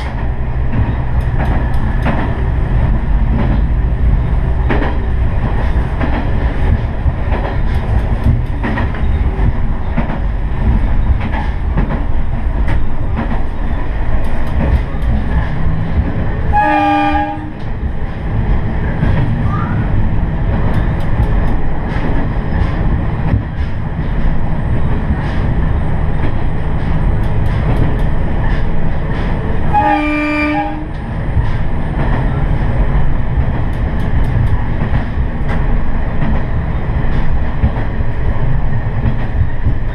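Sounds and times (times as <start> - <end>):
diesel railcar running: 0.0 - 39.9
train horn blasts: 16.5 - 17.7, 29.7 - 31.0.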